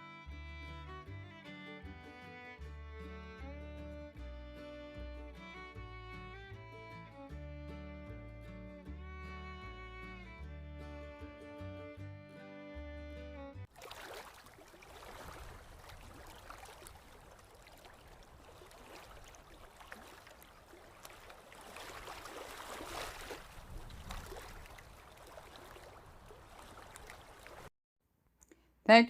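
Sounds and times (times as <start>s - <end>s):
faint stream water running: 13.6s - 27.7s.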